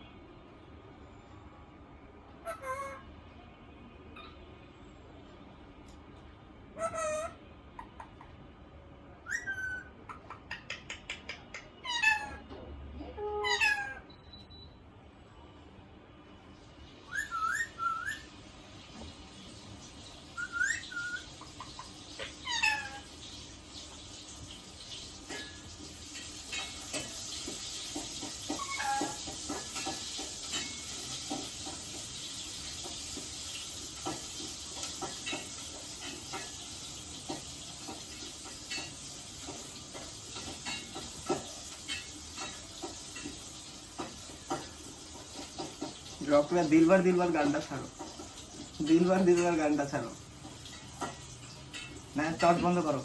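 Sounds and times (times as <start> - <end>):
parrot whistling: 9.2 - 10.0, 17.0 - 18.3, 20.3 - 21.4.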